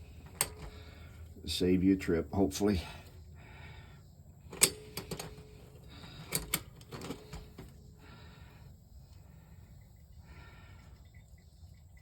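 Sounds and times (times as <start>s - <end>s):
clicks and knocks from handling tools: 0.2s - 0.8s, 4.5s - 7.8s.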